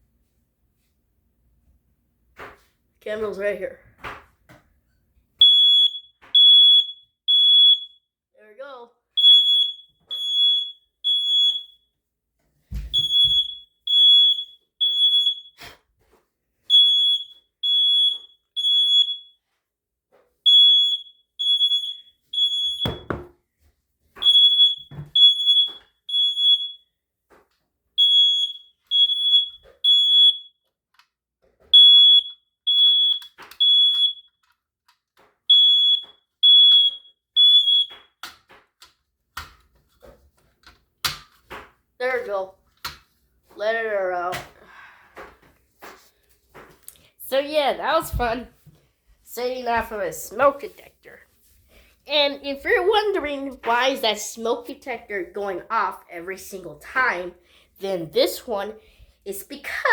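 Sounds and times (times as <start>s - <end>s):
smoke alarm beeping: 5.4s - 8.1s, 9.1s - 12.0s, 12.8s - 15.6s, 16.7s - 19.5s, 20.4s - 23.3s, 24.2s - 27.0s, 28.0s - 30.7s, 31.7s - 34.5s, 35.5s - 38.3s.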